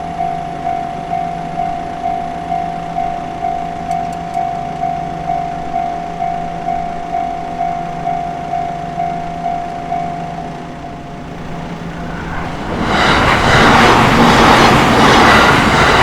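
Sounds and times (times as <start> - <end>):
level-crossing warning bell clanging: 0.0 - 16.0
steady low hum: 0.0 - 16.0.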